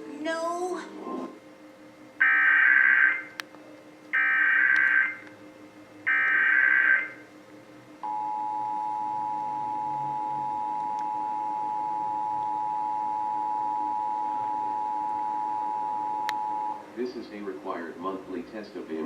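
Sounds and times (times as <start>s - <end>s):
two-tone attention signal: 8.0s - 16.8s.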